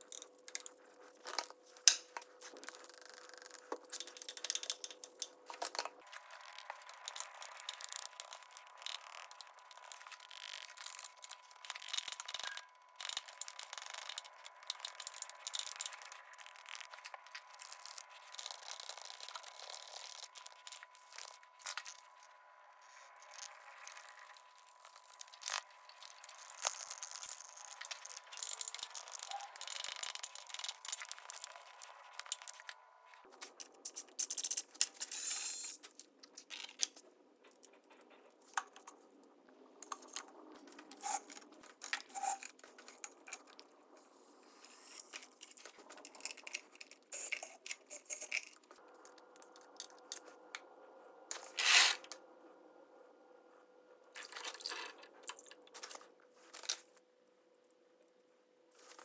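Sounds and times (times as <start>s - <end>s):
objects scraping and rubbing: 51.3s - 52.1s.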